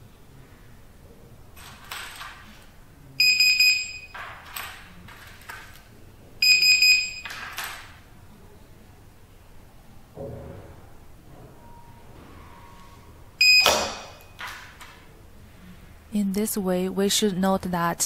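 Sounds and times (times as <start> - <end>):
high buzzer beeps: 3.2 - 4.2, 6.4 - 7.3, 13.4 - 14.4.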